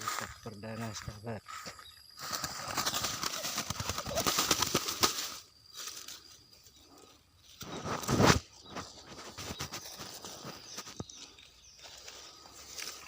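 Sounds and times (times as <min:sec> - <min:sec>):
dove wings flapping: 0:02.2 - 0:06.1.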